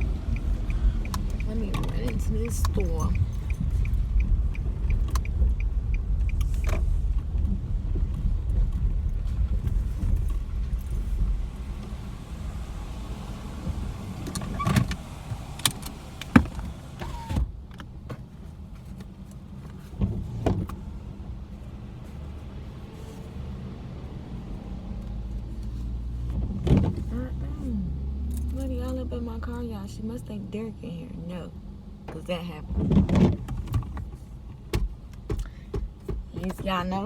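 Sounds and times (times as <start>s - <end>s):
indicator ticking: 0.0s - 6.5s
clicks and knocks in car cabin: 0.0s - 11.0s, 13.7s - 20.8s, 26.3s - 27.1s, 32.0s - 37.0s
car road and engine rumble: 0.0s - 37.0s.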